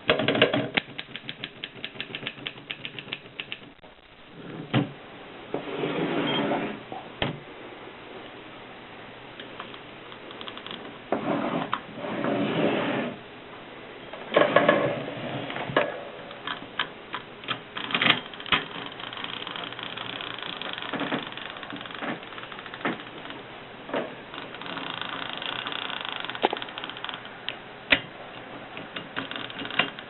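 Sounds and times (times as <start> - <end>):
typewriter mechanical rattles: 0.0 - 3.8, 17.5 - 23.4, 24.4 - 27.4, 28.8 - 30.0.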